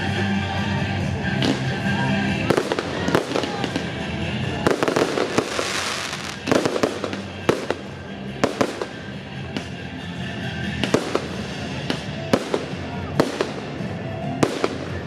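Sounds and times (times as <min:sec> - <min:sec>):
music playing: 0:00.0 - 0:15.0
fireworks crackling: 0:01.3 - 0:09.8, 0:10.7 - 0:15.0
fireworks bangs: 0:04.6 - 0:07.8.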